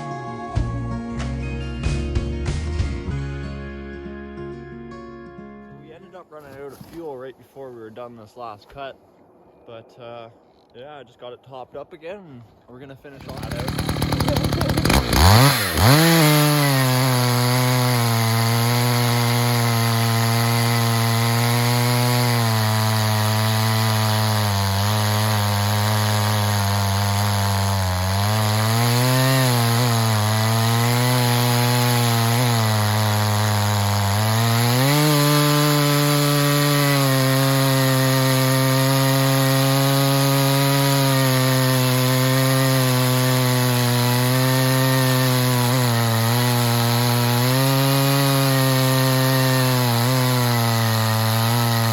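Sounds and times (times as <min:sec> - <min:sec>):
chainsaw cutting through log: 0:13.1 - 0:51.9.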